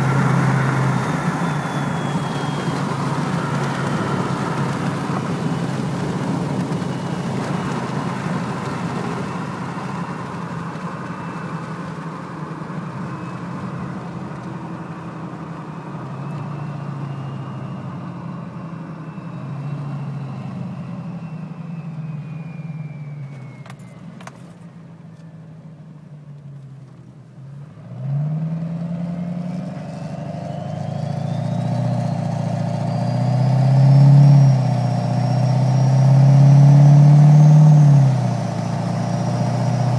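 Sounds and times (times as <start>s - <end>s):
diesel engine driving: 0.0s - 39.9s
turbo whistle: 0.9s - 4.6s.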